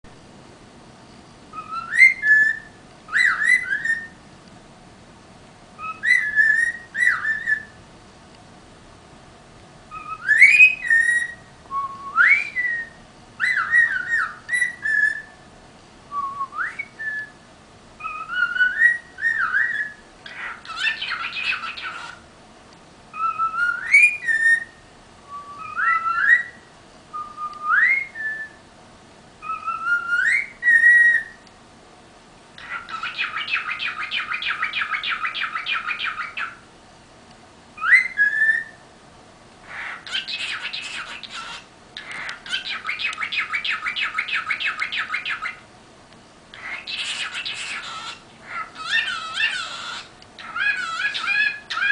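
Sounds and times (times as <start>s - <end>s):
bird buzzy trill: 1.0s - 4.2s, 5.8s - 7.8s, 9.9s - 15.5s, 18.0s - 22.3s, 23.1s - 28.7s, 32.6s - 36.7s, 39.6s - 45.7s, 46.5s - 51.9s
pet bird whistling song: 1.1s - 4.2s, 5.8s - 7.8s, 9.9s - 15.5s, 16.1s - 17.4s, 18.0s - 22.2s, 23.1s - 28.7s, 29.4s - 31.5s, 32.6s - 36.6s, 37.8s - 38.8s, 39.6s - 45.7s, 46.5s - 51.9s.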